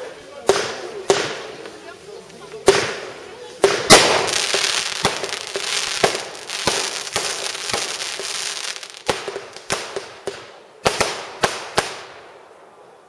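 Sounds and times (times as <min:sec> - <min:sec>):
fireworks bangs: 0:00.4 - 0:12.5
hiss of sparks: 0:02.7 - 0:10.1.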